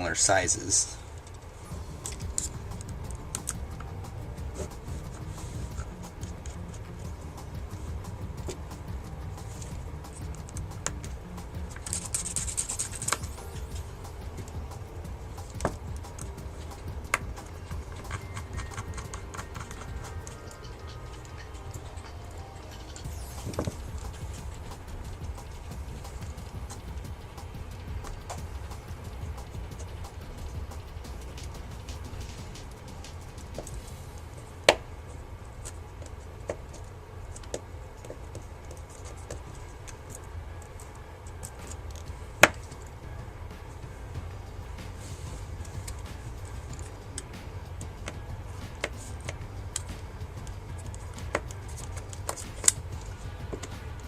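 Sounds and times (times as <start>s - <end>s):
low steady hum: 0.0s - 54.0s
sharp clicks: 1.2s - 33.8s
screwdriver and screws clicking: 9.5s - 13.8s, 15.3s - 26.9s.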